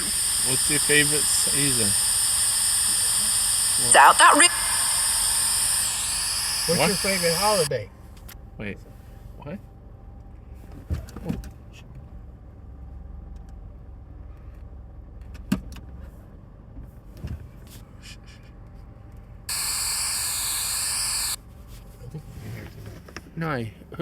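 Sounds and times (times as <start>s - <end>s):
loud static hiss: 0.0s - 7.7s, 19.5s - 21.4s.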